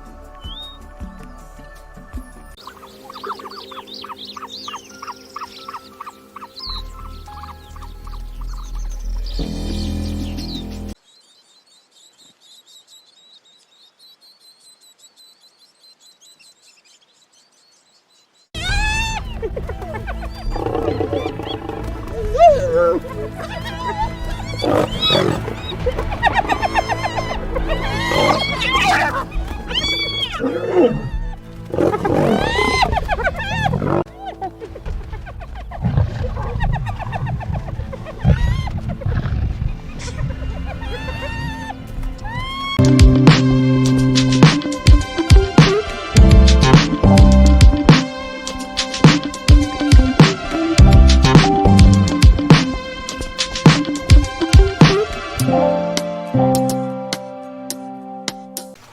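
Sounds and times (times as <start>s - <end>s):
small birds chirping: 0.0s - 55.4s
long rising and falling animal call: 2.6s - 11.0s, 18.6s - 46.2s.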